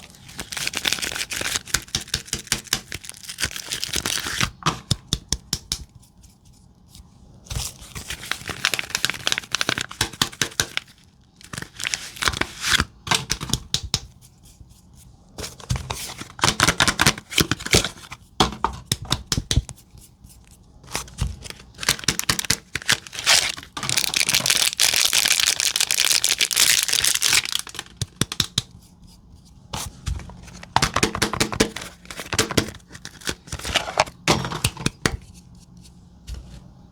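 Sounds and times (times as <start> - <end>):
wrappers crinkling and tearing: 0.0 - 4.6, 7.8 - 12.9, 20.9 - 28.1.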